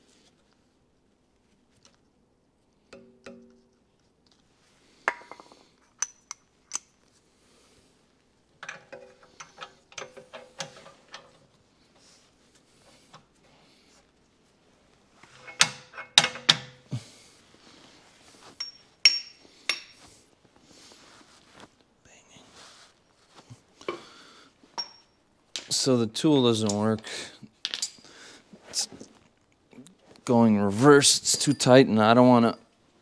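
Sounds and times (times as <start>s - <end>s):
hand tools striking steel parts: 18.6s - 20.0s.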